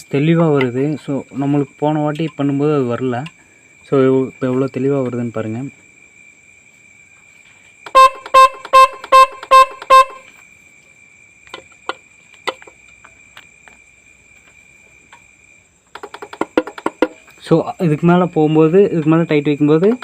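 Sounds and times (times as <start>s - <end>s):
electric horn honks: 7.9s - 10.3s.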